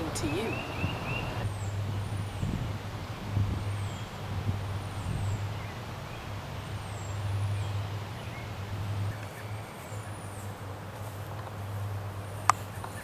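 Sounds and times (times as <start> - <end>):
steady low rumble: 0.0 - 13.0
faint bird chirps: 0.1 - 1.8.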